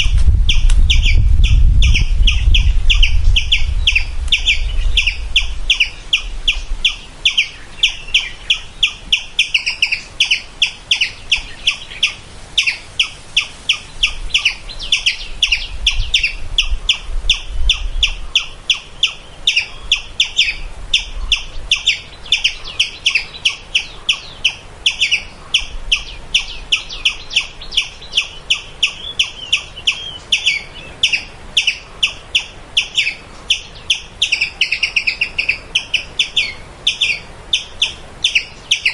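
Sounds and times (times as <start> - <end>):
squirrel chirping: 0.5 - 38.9.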